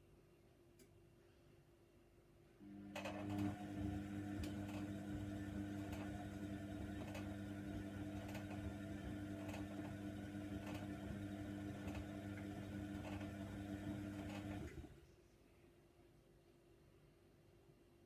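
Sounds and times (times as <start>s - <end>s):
washer dryer humming: 2.6s - 15.0s.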